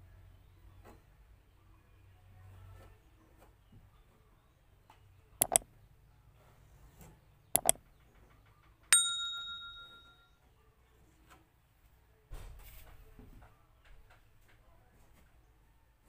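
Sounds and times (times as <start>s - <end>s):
sharp clicks: 5.4s - 5.6s, 7.6s - 7.8s.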